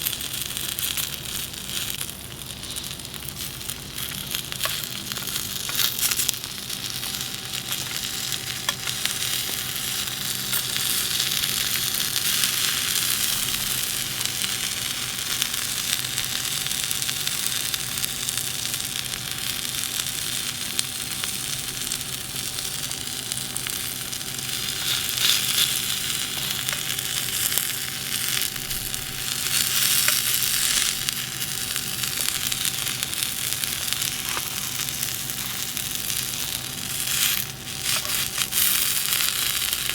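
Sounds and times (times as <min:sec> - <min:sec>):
faint steady hum: 0:00.0 - 0:39.9
food sizzling in a pan: 0:00.0 - 0:39.9.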